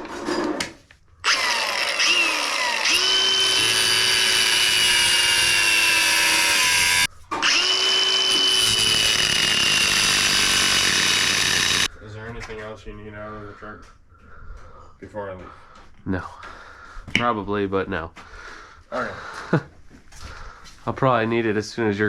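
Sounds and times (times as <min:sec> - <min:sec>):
power tool whining: 0:01.2 - 0:11.9.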